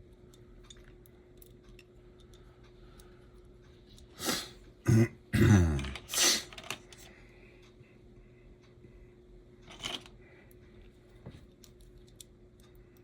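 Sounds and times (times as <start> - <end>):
man clearing his throat: 4.8 - 6.1
man coughing: 4.9 - 6.1.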